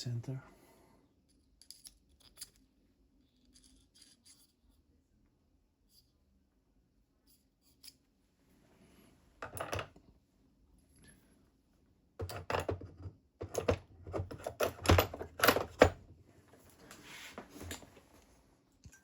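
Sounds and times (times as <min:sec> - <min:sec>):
metal parts clicking and scraping: 0:01.6 - 0:04.6.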